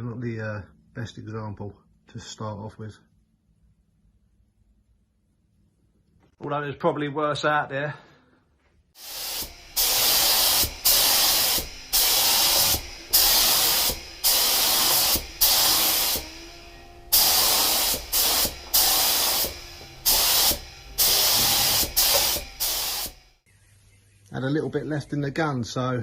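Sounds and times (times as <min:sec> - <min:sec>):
spray gun hissing bursts: 0:09.0 - 0:23.3.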